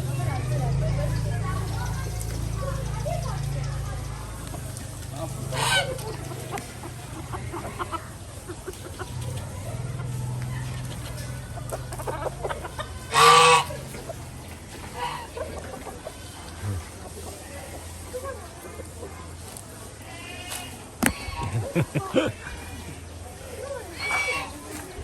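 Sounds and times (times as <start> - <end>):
fowl clucking: 4.4 - 17.8, 20.1 - 22.9, 23.8 - 24.8.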